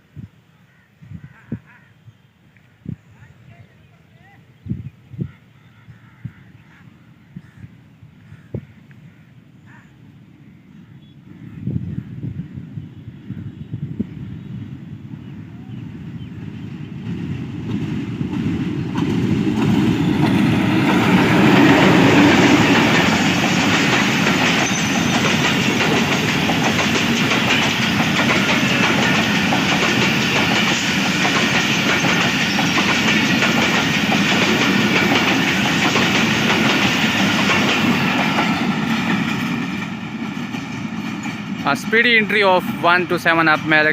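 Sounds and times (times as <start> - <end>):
diesel locomotive passing: 13.4 - 43.9
train wheel clatter: 17.0 - 43.9.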